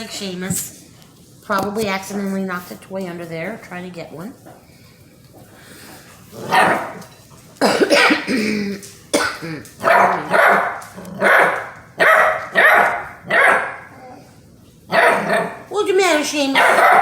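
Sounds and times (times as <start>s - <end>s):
puppy barking: 6.4s - 7.0s, 9.8s - 14.2s, 14.9s - 15.7s, 16.4s - 17.0s.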